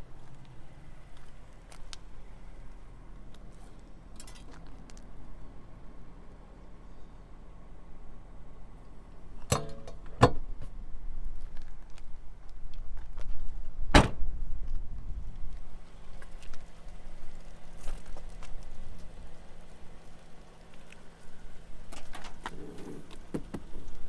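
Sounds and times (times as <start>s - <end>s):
car door thump: 13.9s - 14.2s.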